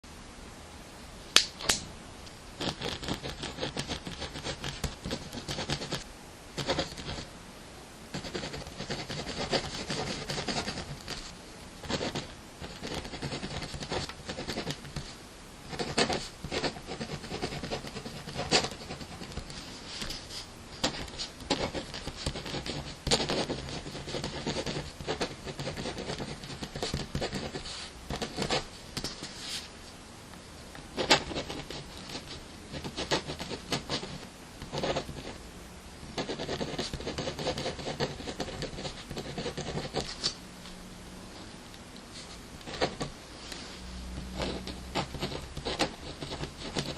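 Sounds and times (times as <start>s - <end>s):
pen scratching on paper: 2.6s - 6.0s, 6.6s - 7.3s, 8.1s - 29.6s, 31.0s - 35.4s, 36.1s - 40.4s, 42.2s - 43.1s, 44.2s - 46.9s.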